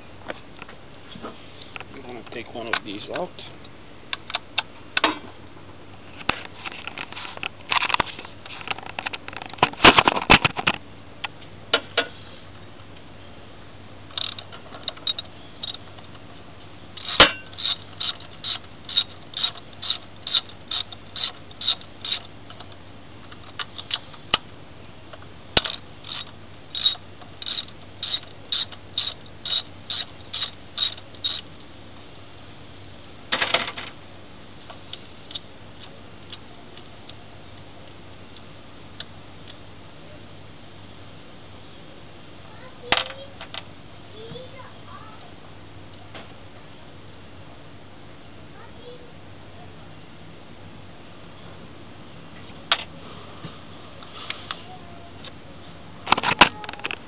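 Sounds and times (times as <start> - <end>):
socket ratchet clicking: 17.0 - 22.7, 25.6 - 31.5.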